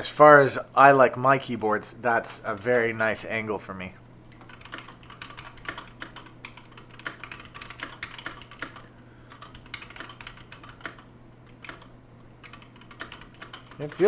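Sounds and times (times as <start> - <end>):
mechanical keyboard typing: 4.3 - 14.0.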